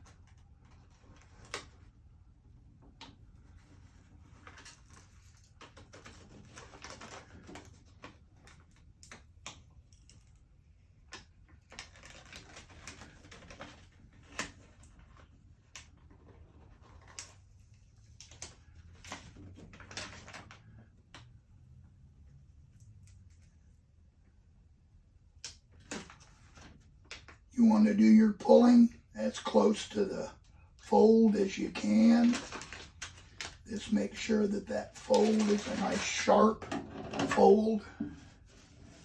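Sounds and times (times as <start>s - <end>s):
tape peeling crackle: 11.1s - 20.4s, 32.0s - 36.4s.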